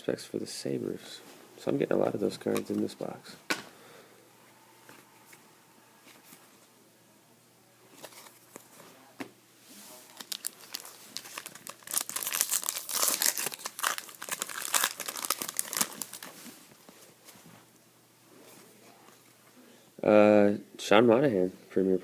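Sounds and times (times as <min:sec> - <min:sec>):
plastic wrapper crinkling and tearing: 0:10.1 - 0:16.6.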